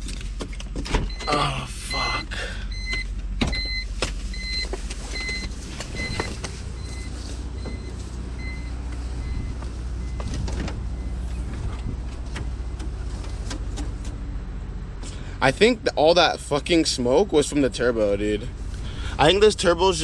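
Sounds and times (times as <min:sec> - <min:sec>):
car engine idling: 0:00.0 - 0:20.0
warning chime beeping: 0:01.1 - 0:03.0, 0:05.2 - 0:10.2.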